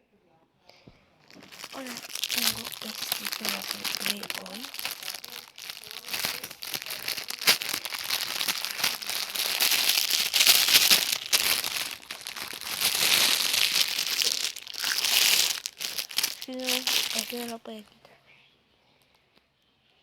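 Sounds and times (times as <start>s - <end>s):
plastic packaging crinkling: 1.2s - 17.9s.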